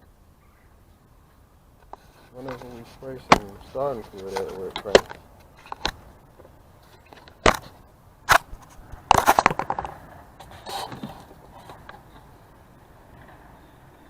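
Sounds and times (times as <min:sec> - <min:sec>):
sharp knocks: 0:02.0 - 0:06.1.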